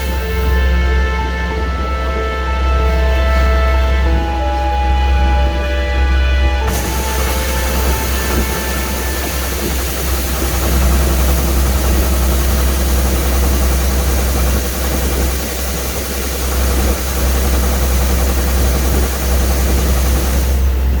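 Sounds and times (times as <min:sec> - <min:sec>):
combine harvester engine running: 0:06.6 - 0:21.0.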